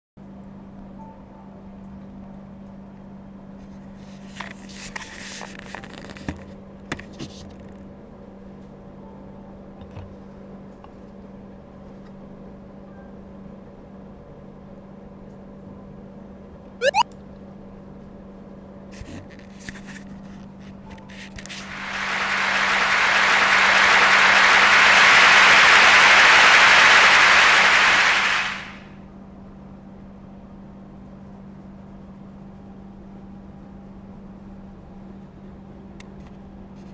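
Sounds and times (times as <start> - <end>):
rising whistle sound effect: 16.8 - 17.0.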